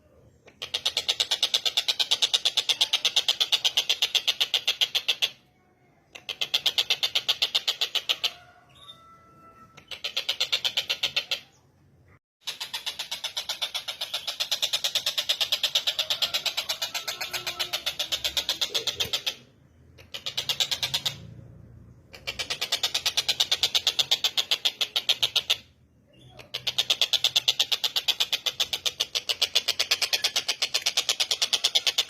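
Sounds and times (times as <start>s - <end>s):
kingfisher rattling chatter: 12.5s - 21.3s.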